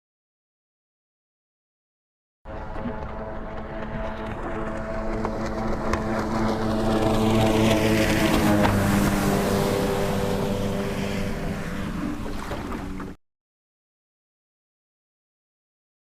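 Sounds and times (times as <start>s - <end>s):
jet ski engine passing: 2.5s - 13.2s.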